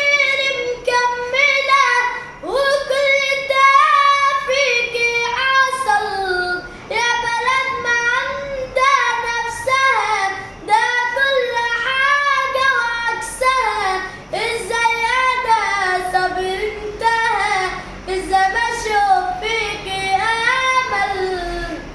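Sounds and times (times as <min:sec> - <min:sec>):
child singing: 0:00.0 - 0:21.9
child breathing: 0:14.0 - 0:14.3, 0:17.8 - 0:18.1.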